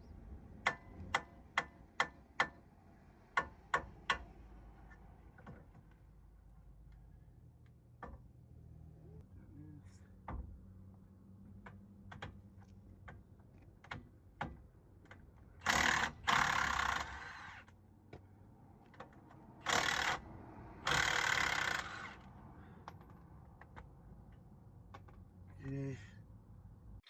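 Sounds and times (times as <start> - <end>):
power tool bursts: 15.6 - 17.6, 20.8 - 22.2.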